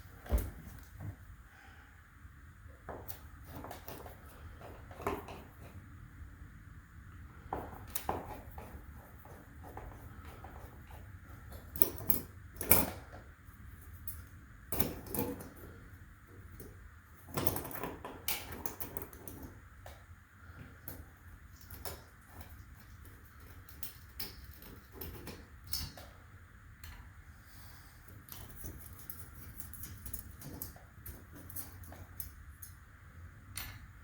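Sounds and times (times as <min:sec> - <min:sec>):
clicks knocks and scrapes of tools: 0:02.8 - 0:05.8, 0:07.4 - 0:13.2, 0:20.6 - 0:26.2, 0:28.0 - 0:32.8.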